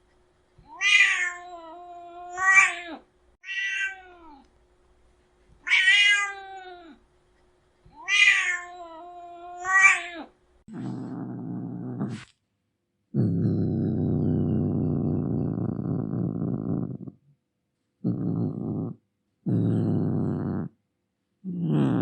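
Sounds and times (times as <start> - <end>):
cat meowing: 0.6 - 4.4, 5.6 - 7.0, 7.9 - 10.3
cat growling: 8.0 - 12.3, 13.2 - 17.2, 18.0 - 20.8, 21.4 - 22.0.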